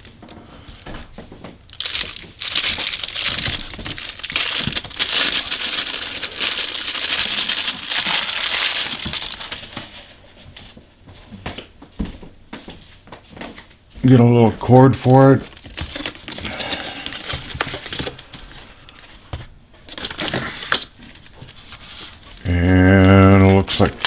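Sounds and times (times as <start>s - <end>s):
plastic packaging crinkling: 0.0s - 10.2s, 15.4s - 24.0s.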